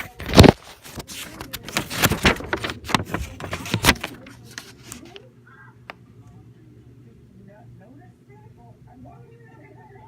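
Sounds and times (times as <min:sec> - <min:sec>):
cardboard packaging rustling: 0:00.0 - 0:05.2.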